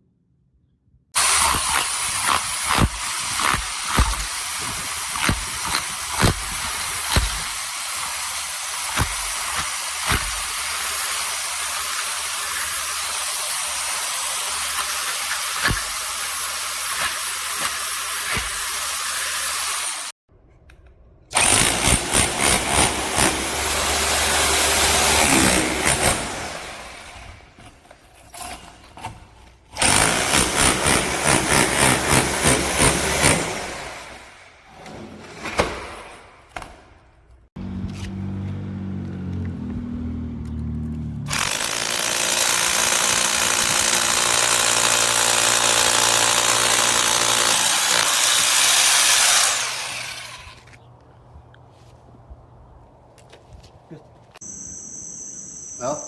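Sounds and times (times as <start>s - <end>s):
rotary hammer drill running: 1.2s - 20.1s, 21.4s - 27.4s, 29.8s - 34.5s, 41.3s - 50.6s
rapid hammer blows into concrete: 29.8s - 34.3s.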